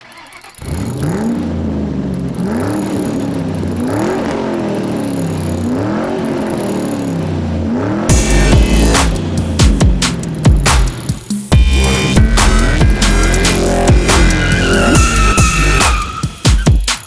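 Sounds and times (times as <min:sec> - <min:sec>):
engine revving: 0:00.0 - 0:16.7
electronic music beat: 0:08.1 - 0:17.0.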